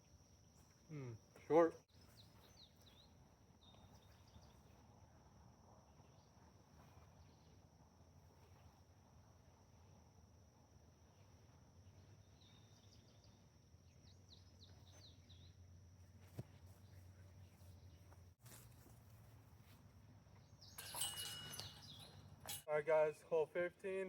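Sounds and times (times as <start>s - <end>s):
bird chirps: 20.6s - 22.6s.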